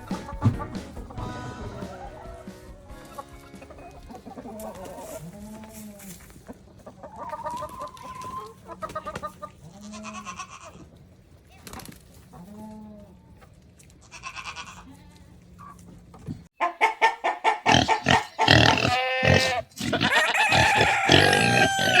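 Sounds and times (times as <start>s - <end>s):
chickens clucking: 0.0s - 11.0s, 15.5s - 22.0s
goats bleating: 9.6s - 10.8s, 14.0s - 15.2s, 17.7s - 22.0s.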